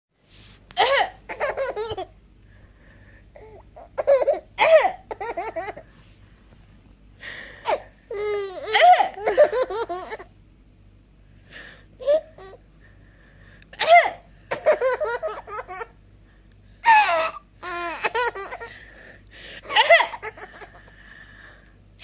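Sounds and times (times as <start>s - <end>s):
person coughing: 0.8s - 1.2s, 4.6s - 5.1s, 8.7s - 9.2s, 13.8s - 14.3s
baby laughing: 0.8s - 2.1s, 3.4s - 5.8s, 7.7s - 10.3s, 12.0s - 12.6s, 14.5s - 15.9s, 16.8s - 18.8s, 19.6s - 20.9s.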